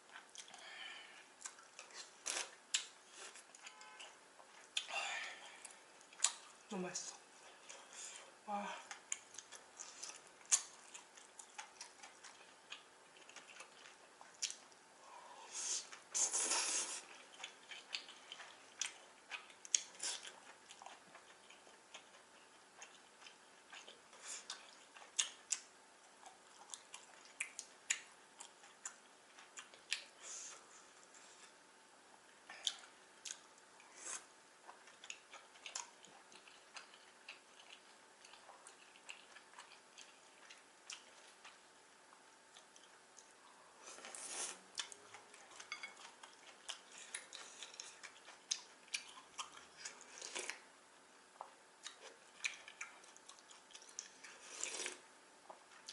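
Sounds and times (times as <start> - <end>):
wet chewing of noodles: 0.0 - 6.6, 7.2 - 55.9.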